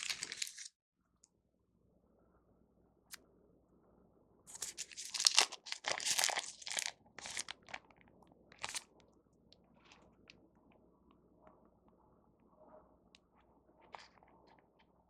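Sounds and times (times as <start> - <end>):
plastic packaging crinkling and tearing: 0.0 - 0.7, 4.5 - 7.8, 8.6 - 8.9.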